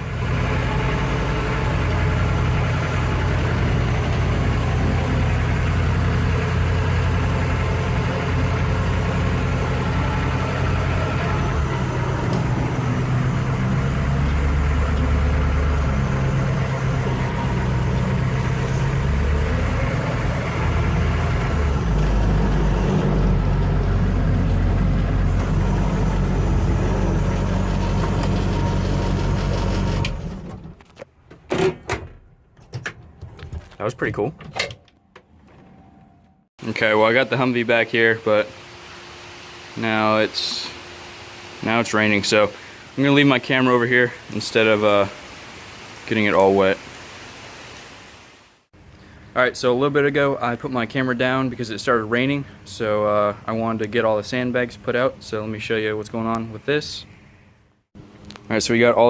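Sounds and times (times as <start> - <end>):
diesel engine running under load: 0.0 - 30.8, 50.0 - 55.7.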